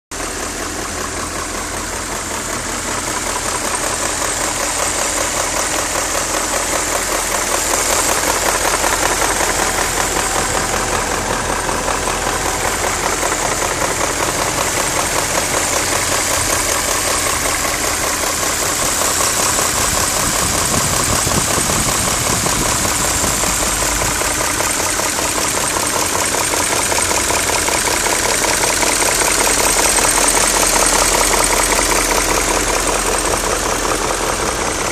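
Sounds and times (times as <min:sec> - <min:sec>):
car engine running: 0:00.1 - 0:34.9
fast steady engine knocking: 0:00.1 - 0:34.9.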